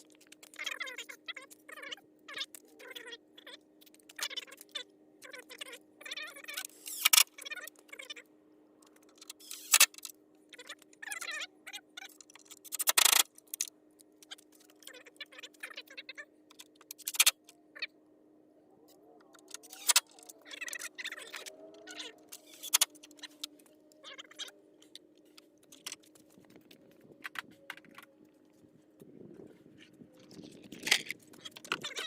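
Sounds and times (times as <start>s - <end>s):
short squeaks: 0.4s - 8.2s, 8.9s - 17.9s, 18.9s - 28.1s
plastic clicks and rattles: 30.2s - 32.0s.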